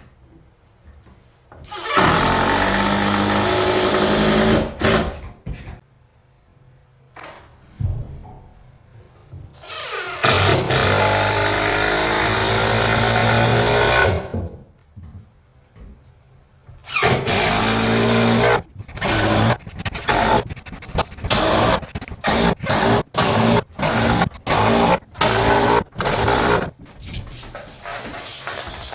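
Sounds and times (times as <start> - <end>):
electric planer cutting wood: 17.2 - 26.7.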